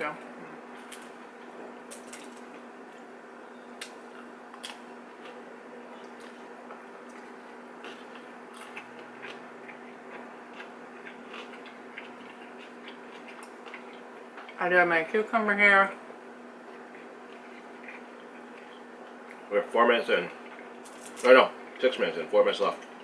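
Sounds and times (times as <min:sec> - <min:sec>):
people chewing: 0:00.4 - 0:14.6, 0:16.6 - 0:23.0.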